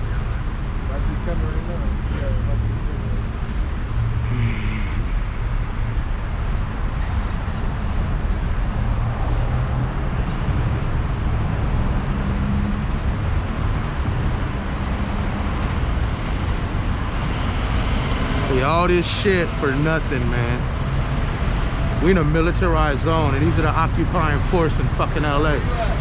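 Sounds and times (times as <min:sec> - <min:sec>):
vehicle engines droning on street: 0:00.0 - 0:26.0.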